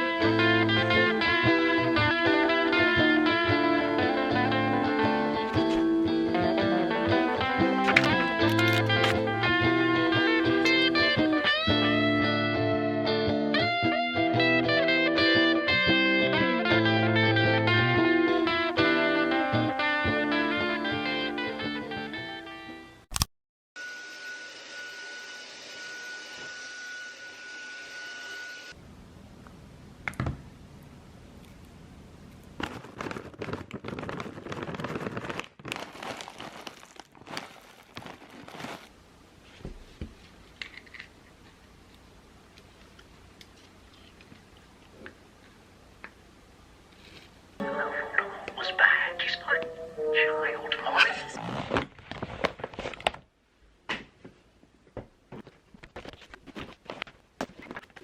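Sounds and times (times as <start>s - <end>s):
material crinkling and rustling: 7.8s - 9.2s, 32.5s - 41.6s, 51.3s - 53.3s, 55.4s - 58.0s.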